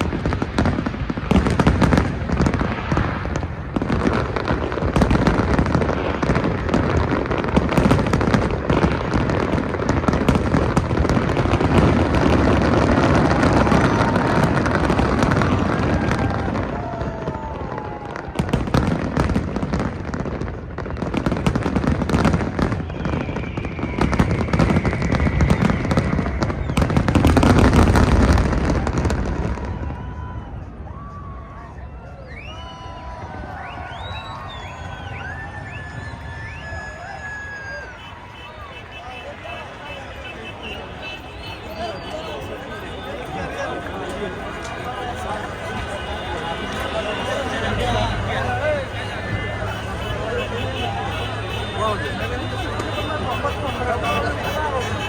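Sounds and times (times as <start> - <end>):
fireworks bangs and crackling: 0.0 - 55.0
whistling firework shells: 20.6 - 28.8, 32.1 - 55.0.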